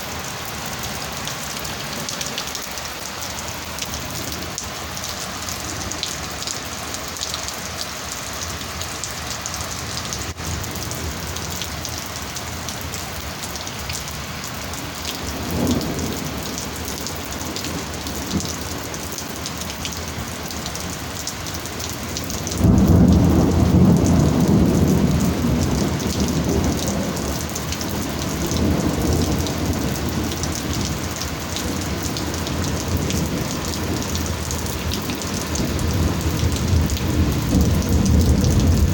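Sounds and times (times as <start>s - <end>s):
heavy rain falling: 0.0s - 38.9s
thunder rumbling: 22.5s - 38.9s
loud thunderclap: 22.6s - 27.2s, 35.7s - 38.9s.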